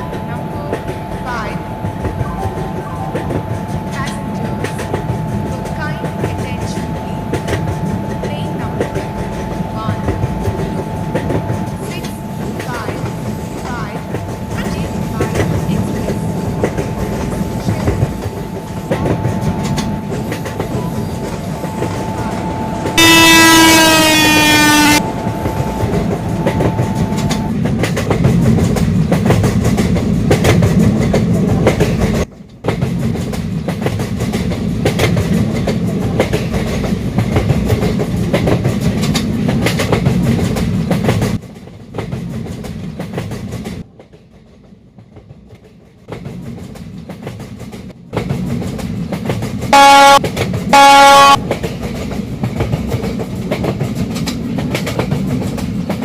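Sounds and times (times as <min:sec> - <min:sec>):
train rumble with wheel clatter: 0:00.0 - 0:56.0
train horn blasts: 0:22.9 - 0:27.5, 0:49.7 - 0:51.5.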